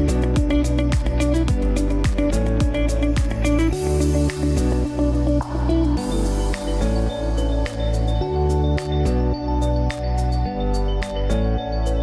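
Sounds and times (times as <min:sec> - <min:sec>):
steady percussive beat: 0:00.0 - 0:04.6
synth and bass chords: 0:00.0 - 0:12.0.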